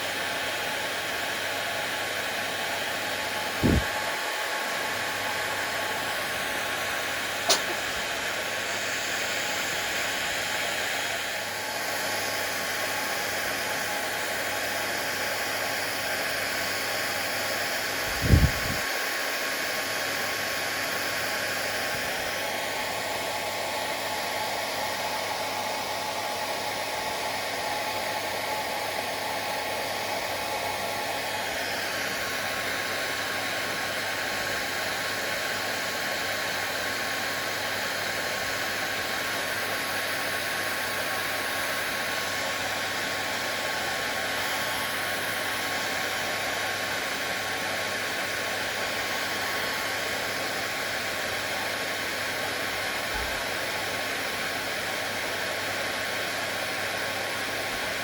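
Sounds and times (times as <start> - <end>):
hair dryer running: 0.0 - 58.0.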